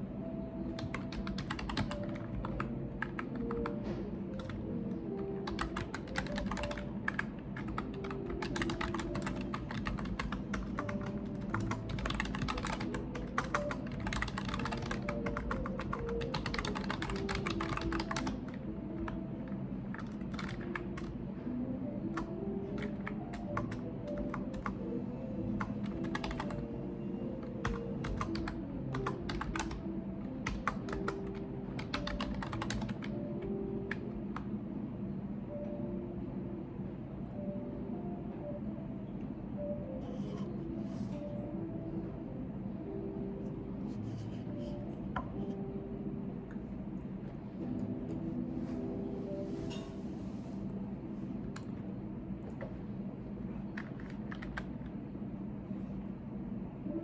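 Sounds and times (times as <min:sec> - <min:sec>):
computer keyboard typing: 0:00.7 - 0:21.2, 0:22.0 - 0:24.9, 0:25.5 - 0:26.8, 0:27.4 - 0:34.5, 0:53.7 - 0:55.0.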